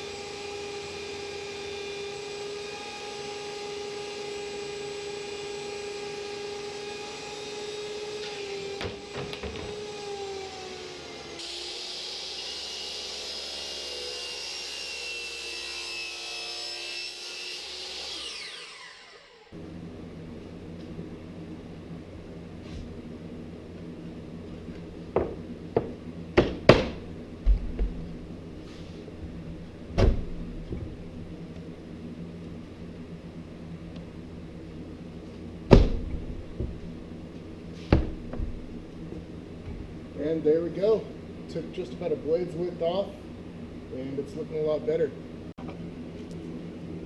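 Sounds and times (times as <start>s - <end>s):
table saw cutting plywood: 0.0s - 19.6s
saw blade spinning down: 17.1s - 19.6s
steady low hum: 19.6s - 47.0s
wooden knocks: 25.2s - 28.0s.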